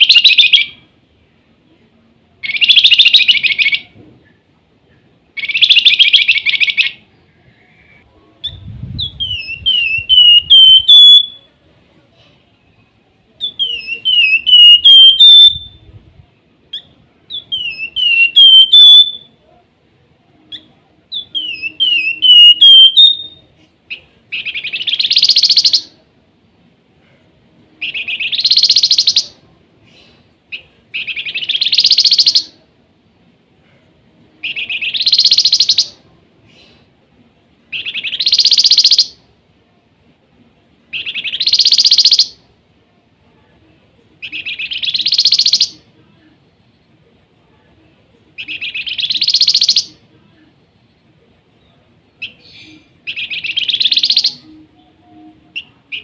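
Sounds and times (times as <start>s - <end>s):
songbird whistled notes: 5.4s - 11.7s, 13.4s - 15.9s, 16.7s - 19.4s, 20.5s - 23.5s, 24.3s - 25.9s, 27.8s - 29.4s, 31.0s - 32.5s, 34.4s - 36.0s, 37.7s - 39.2s, 41.0s - 42.4s, 43.5s - 47.0s, 47.8s - 56.0s
harsh buzzy bird call: 9.4s - 11.4s, 13.6s - 15.6s, 17.5s - 19.2s, 21.4s - 23.4s.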